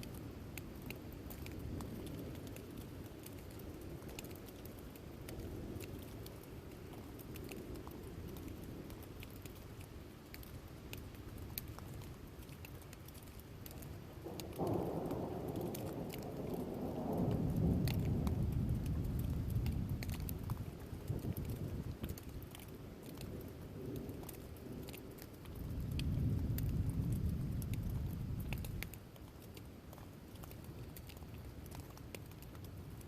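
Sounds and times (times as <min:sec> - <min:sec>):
steady rain: 0:00.0 - 0:33.0
water drips: 0:00.0 - 0:33.0
thunder clap rumbling: 0:14.3 - 0:22.0.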